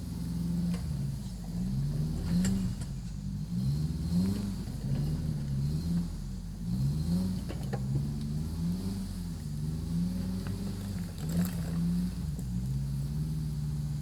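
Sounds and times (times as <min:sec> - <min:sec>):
engine revving up and down: 0:01.7 - 0:14.0.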